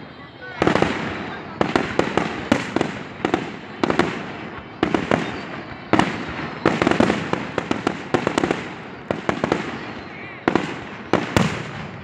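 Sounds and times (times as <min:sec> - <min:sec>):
fireworks bursting: 0:00.0 - 0:12.0.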